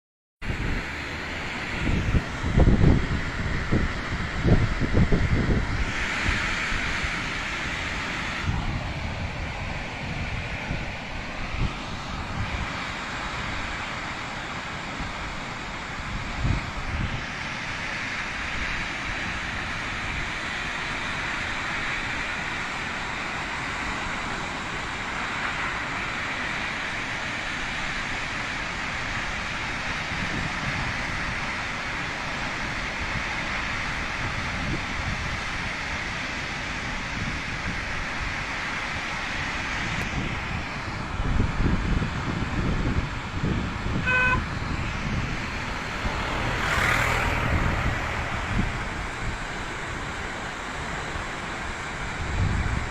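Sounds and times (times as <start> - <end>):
waterfall rushing: 5.8 - 41.3, 43.7 - 52.9.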